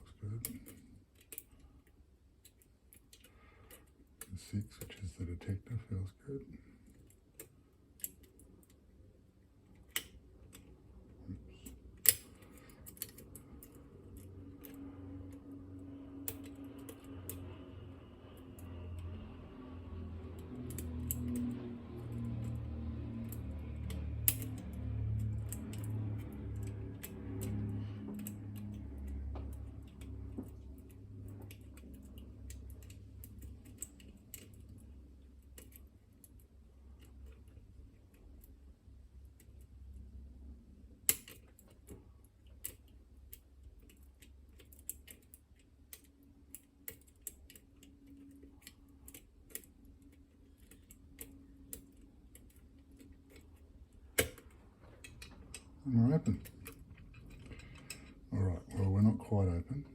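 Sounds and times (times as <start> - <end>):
low rumbling hum: 0.0 - 44.7
lock picks clicking: 11.6 - 15.4, 16.2 - 17.5, 20.2 - 38.5, 41.0 - 58.3.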